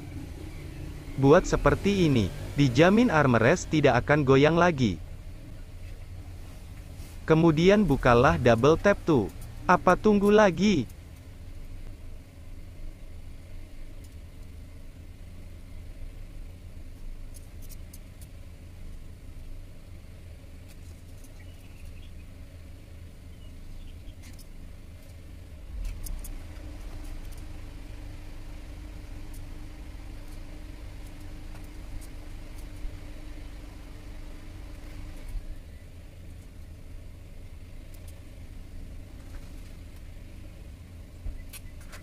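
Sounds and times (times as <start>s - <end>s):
car engine idling: 0.0s - 42.0s
faint clicks and handling noises: 8.5s - 12.0s, 13.9s - 14.6s, 16.9s - 19.0s, 24.2s - 27.7s, 29.0s - 33.7s, 36.2s - 36.8s, 37.7s - 38.4s.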